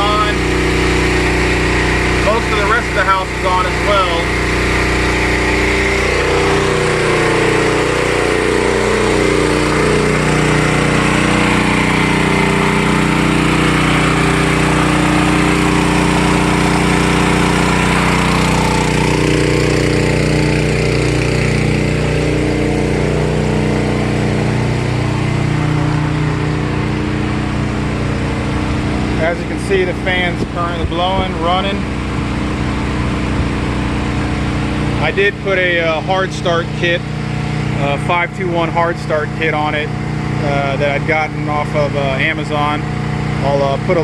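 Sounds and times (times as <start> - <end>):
generator engine running: 0.0 - 44.0.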